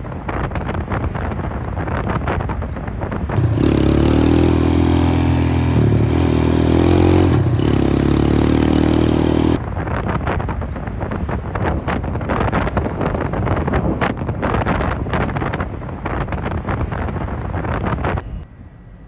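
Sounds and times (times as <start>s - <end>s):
wind buffeting microphone: 0.0s - 18.5s
loud engine-like drone: 3.4s - 9.6s.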